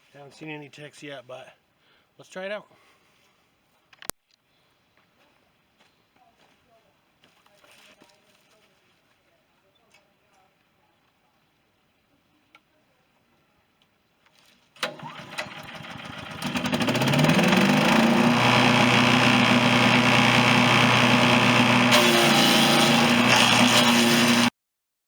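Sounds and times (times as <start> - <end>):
chipper shredder engine revving: 14.8 - 24.5.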